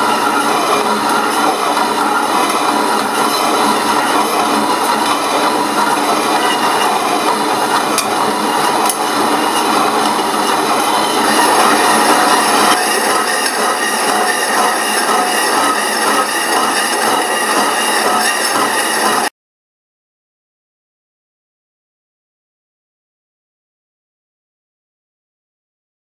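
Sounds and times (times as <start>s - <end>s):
power saw cutting metal: 0.0s - 19.3s.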